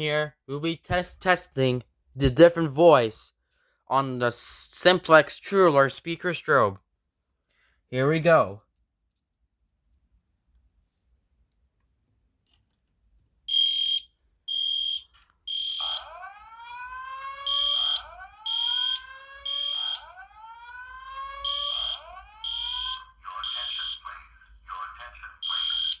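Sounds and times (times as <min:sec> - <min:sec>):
fire alarm horn blasts: 0:13.5 - 0:24.1, 0:25.4 - 0:26.0.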